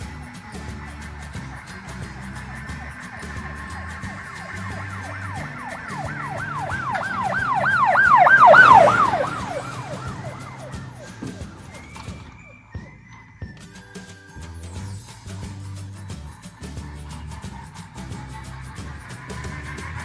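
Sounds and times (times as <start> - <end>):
background music: 0.0 - 20.0
siren yelping: 1.1 - 14.1.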